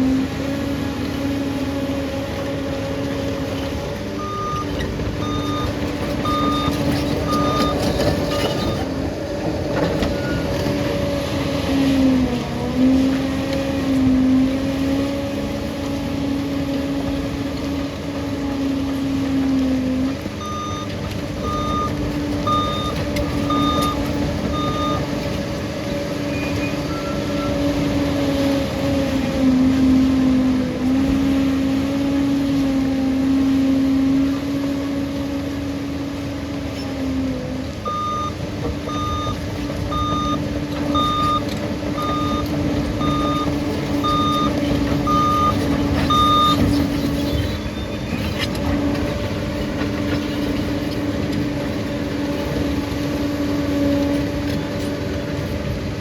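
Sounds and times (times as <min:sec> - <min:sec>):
bulldozer diesel engine drone: 0:00.0 - 0:56.0
reversing alarm beeps: 0:04.2 - 0:08.9, 0:20.4 - 0:25.2, 0:26.3 - 0:27.6, 0:37.8 - 0:46.7.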